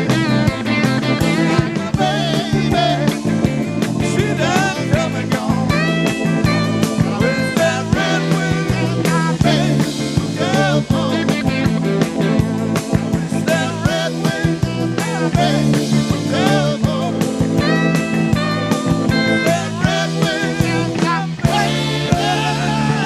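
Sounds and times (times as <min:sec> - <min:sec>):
bass guitar: 0:00.0 - 0:23.0
drums: 0:00.0 - 0:23.0
lead electric guitar: 0:00.0 - 0:23.0.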